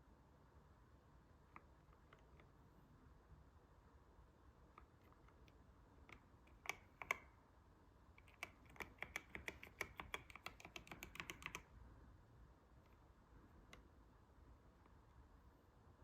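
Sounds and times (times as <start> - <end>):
faint mechanical keyboard typing: 1.5 - 2.8, 4.6 - 7.4, 8.1 - 11.8, 12.7 - 15.6.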